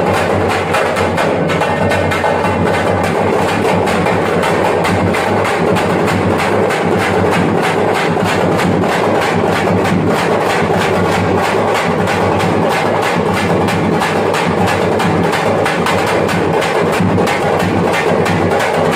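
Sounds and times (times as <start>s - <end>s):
frame drums beaten with sticks: 0.0s - 18.9s.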